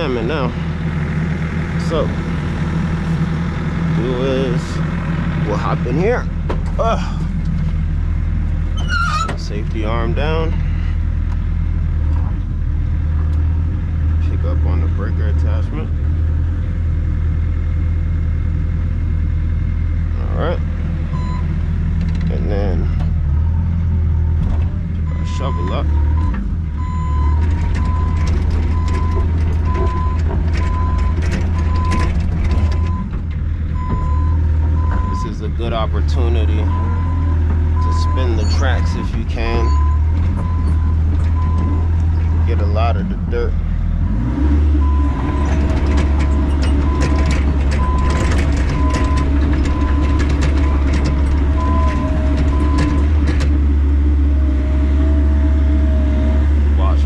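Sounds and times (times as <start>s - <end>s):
excavator diesel engine running: 0.0s - 57.0s
travel alarm beeping: 21.2s - 21.5s, 36.7s - 41.8s
tracks clanking: 24.3s - 57.0s
machine clanks and knocks: 27.4s - 34.1s, 45.3s - 53.7s.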